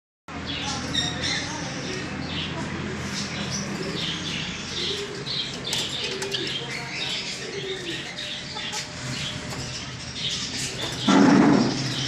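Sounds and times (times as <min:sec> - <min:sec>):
partridges chirping: 0:00.6 - 0:12.0.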